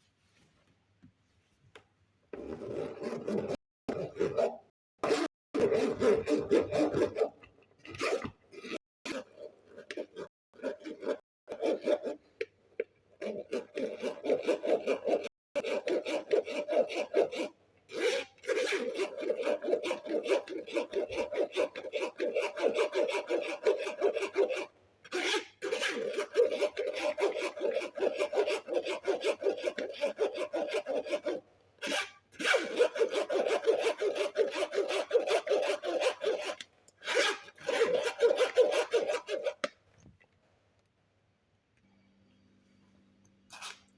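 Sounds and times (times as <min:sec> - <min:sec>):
rasping scraping rub: 0:13.2 - 0:39.7.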